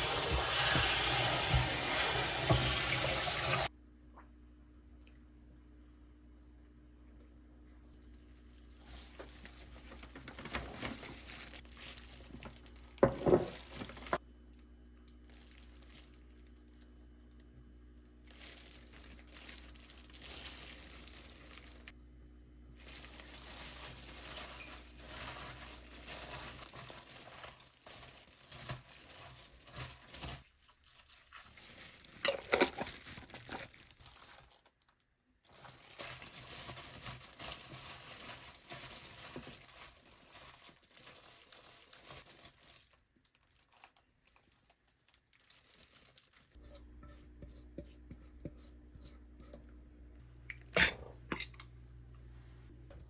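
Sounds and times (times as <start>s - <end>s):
plastic packaging crinkling: 8.4s - 14.2s, 15.1s - 16.9s, 18.2s - 21.9s, 22.8s - 46.6s.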